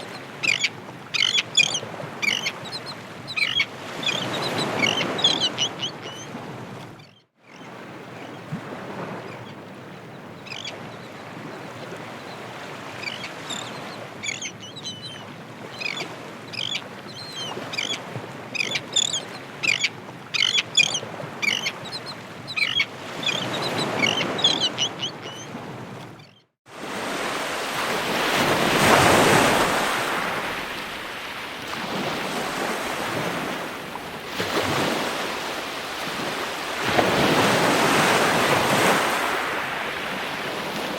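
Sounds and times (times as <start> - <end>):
ocean waves breaking: 0.0 - 40.9.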